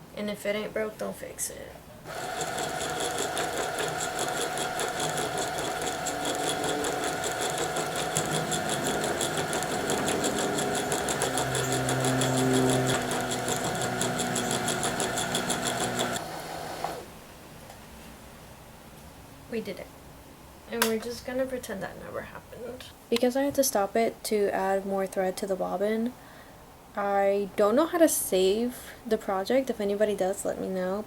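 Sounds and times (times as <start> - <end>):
bobbin winder whirring: 2.1 - 17.0.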